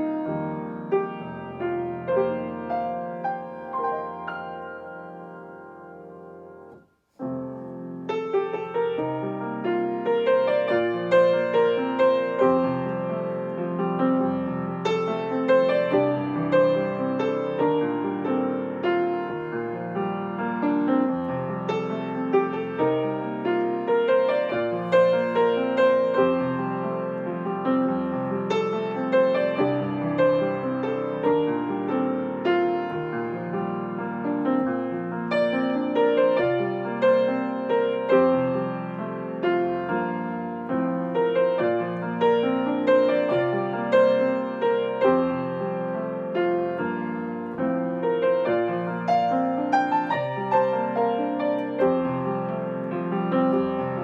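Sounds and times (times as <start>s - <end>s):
solo piano music: 0.0s - 54.0s.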